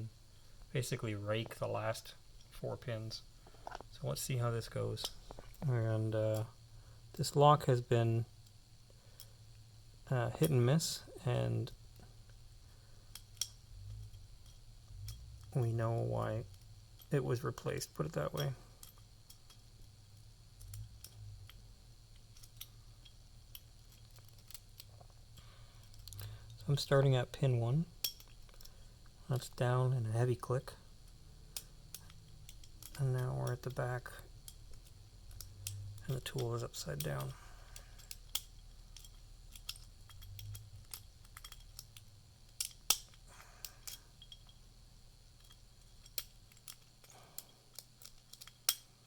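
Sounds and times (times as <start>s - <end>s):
lock pick ticking and scraping: 20.6s - 26.9s, 28.0s - 29.5s, 31.0s - 44.6s, 45.3s - 48.9s.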